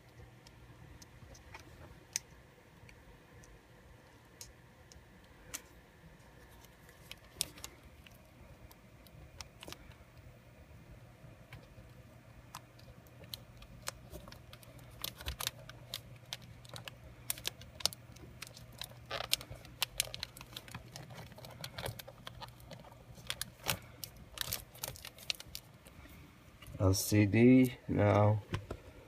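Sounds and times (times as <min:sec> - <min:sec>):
faint steady hum: 0:00.0 - 0:29.0
plastic and metal parts clicking: 0:13.2 - 0:25.6.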